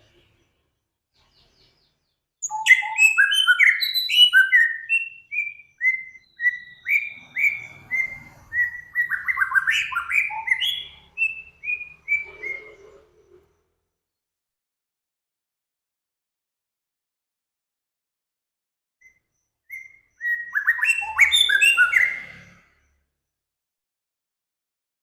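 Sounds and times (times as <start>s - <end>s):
songbird singing: 0.0s - 13.9s, 19.0s - 23.0s.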